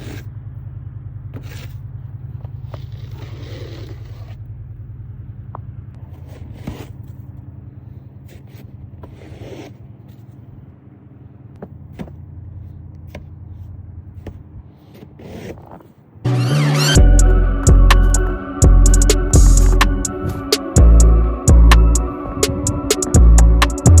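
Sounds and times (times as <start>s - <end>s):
car engine idling: 0.0s - 2.8s, 4.4s - 6.1s, 17.0s - 24.0s
ice scraping off car: 1.4s - 4.5s, 6.1s - 7.3s, 8.1s - 10.4s, 14.7s - 16.9s.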